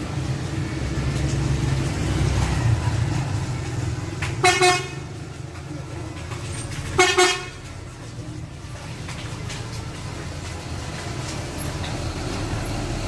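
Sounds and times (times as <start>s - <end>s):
bus engine rumbling: 0.0s - 13.0s
musical air horn blast: 4.4s - 5.0s.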